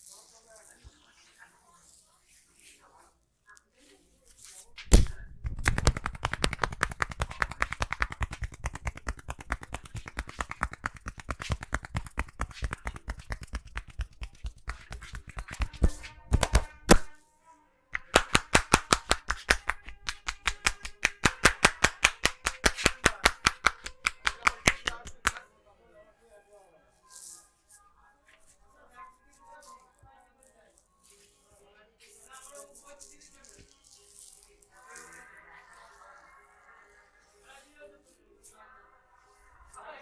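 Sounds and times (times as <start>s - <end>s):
hands tapping and slapping on head: 4.8s - 17.2s, 18.0s - 25.4s.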